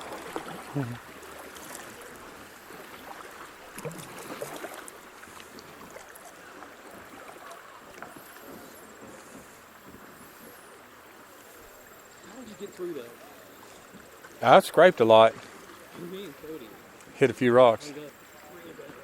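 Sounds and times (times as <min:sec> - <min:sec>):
water splashing around a kayak: 0:00.0 - 0:19.0.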